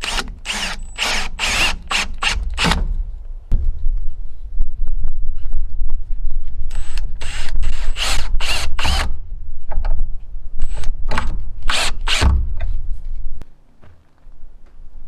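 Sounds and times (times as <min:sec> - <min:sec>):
cordless drill bursts: 0:00.0 - 0:02.8, 0:06.8 - 0:09.1, 0:11.7 - 0:12.2.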